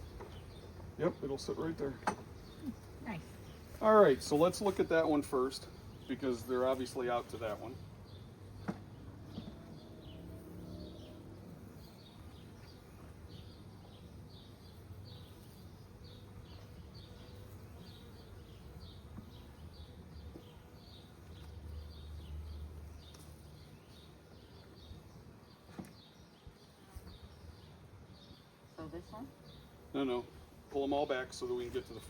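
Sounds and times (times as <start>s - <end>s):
bird chirping: 7.5s - 29.8s.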